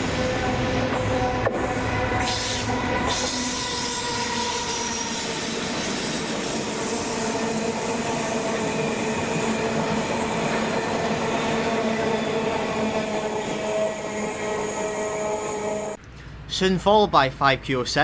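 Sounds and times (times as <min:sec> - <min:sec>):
freight train passing: 0:00.0 - 0:16.0.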